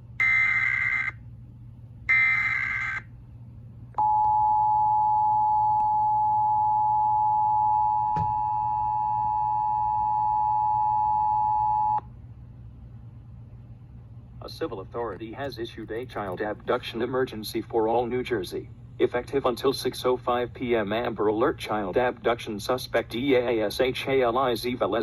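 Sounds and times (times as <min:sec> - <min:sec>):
screeching digital data bursts: 0:02.2 - 0:03.0.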